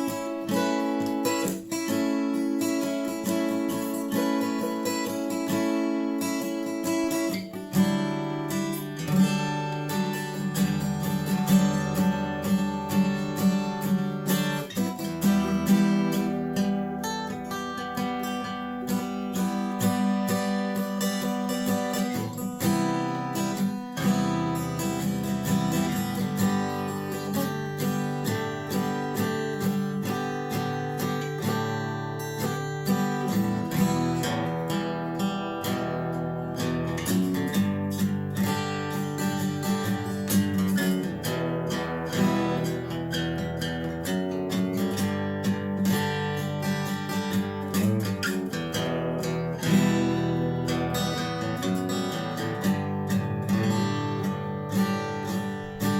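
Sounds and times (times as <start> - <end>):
acoustic guitar strumming and plucking: 0.0 - 55.9.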